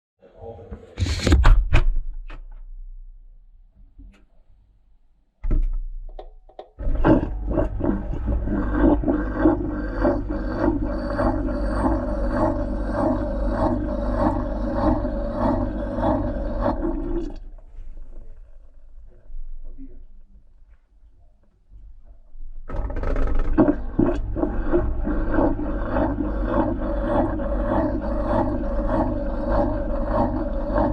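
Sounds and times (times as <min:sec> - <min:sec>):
washing machine low hum: 0:05.8 - 0:19.8, 0:22.6 - 0:30.9
washing machine churning: 0:06.8 - 0:18.8, 0:22.7 - 0:30.9.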